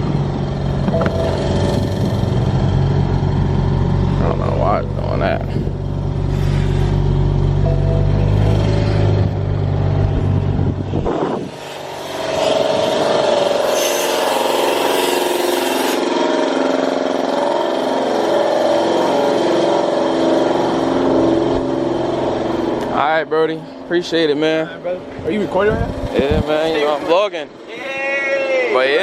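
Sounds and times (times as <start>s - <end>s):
car engine humming: 0.0s - 13.7s
high wavering vehicle sound: 0.6s - 4.2s, 5.7s - 13.6s.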